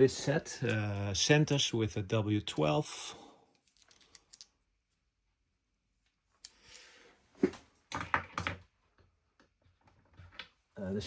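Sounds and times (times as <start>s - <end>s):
metal parts clicking and knocking: 3.5s - 4.6s.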